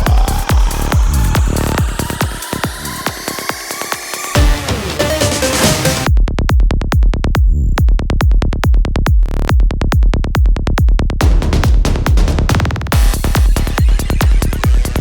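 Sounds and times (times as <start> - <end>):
electronic dance music: 0.0 - 6.1, 13.0 - 15.0.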